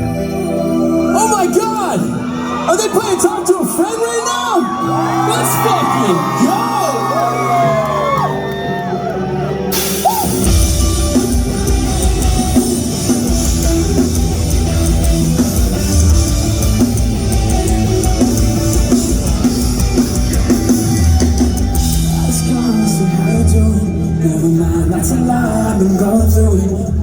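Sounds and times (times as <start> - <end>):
live rock band playing: 0.0 - 27.0.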